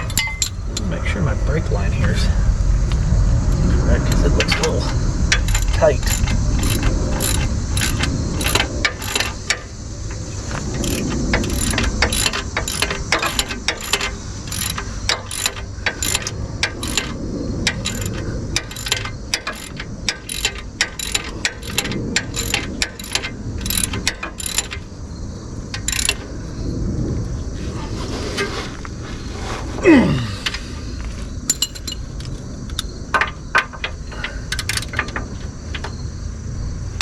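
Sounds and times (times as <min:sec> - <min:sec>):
ratchet wrench clicking: 0:00.0 - 0:00.9, 0:04.0 - 0:25.0, 0:25.7 - 0:26.4, 0:31.5 - 0:36.0.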